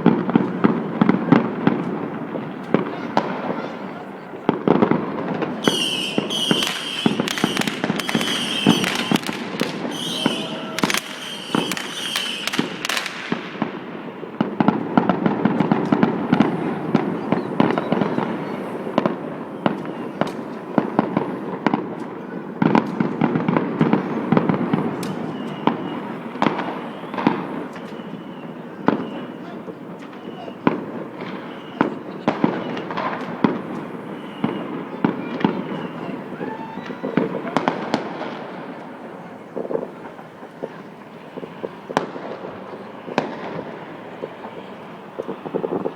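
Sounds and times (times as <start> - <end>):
fireworks bangs and crackles: 0.0 - 45.9
high whistling tone: 5.6 - 9.3, 9.9 - 12.7, 25.0 - 30.6.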